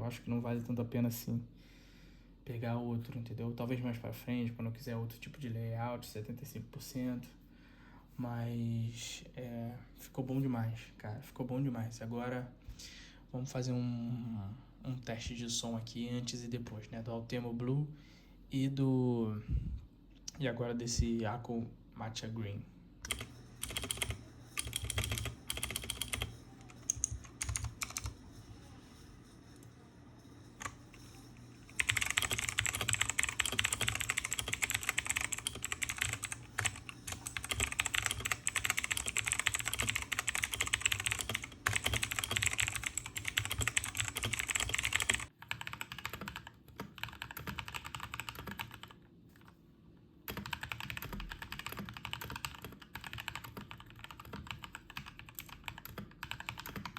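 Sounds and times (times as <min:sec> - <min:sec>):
typing on mechanical keyboard: 0:23.0 - 0:28.7, 0:30.6 - 0:49.5, 0:50.3 - 0:56.9.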